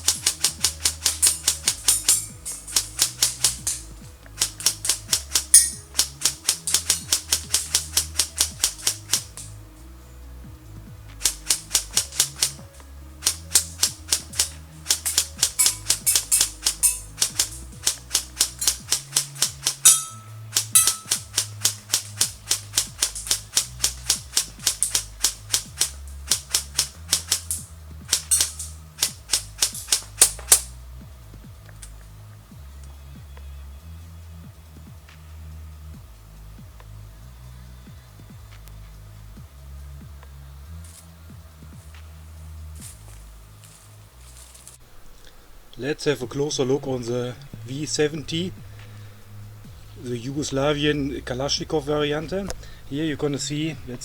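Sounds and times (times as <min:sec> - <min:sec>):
airsoft rifle firing bursts: 0:00.0 - 0:09.5, 0:11.2 - 0:30.8
background music: 0:00.0 - 0:54.0.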